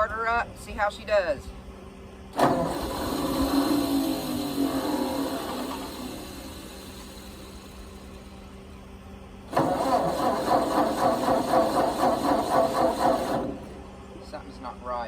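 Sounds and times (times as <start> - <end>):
starter cranking tractor engine: 2.3 - 14.0.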